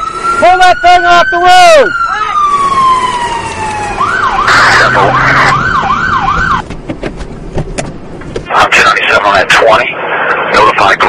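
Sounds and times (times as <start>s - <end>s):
police siren: 0.0s - 6.6s.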